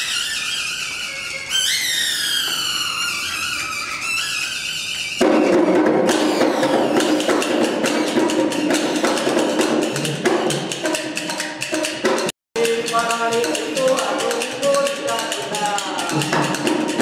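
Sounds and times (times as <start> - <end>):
quick percussion strikes: 5.2 - 17.0.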